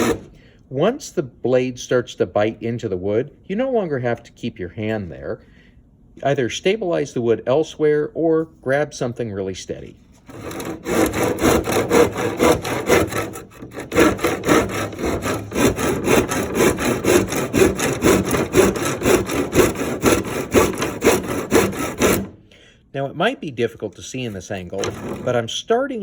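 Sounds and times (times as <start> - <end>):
hand saw cutting wood: 0.0 - 0.4, 10.2 - 22.4, 24.7 - 25.4.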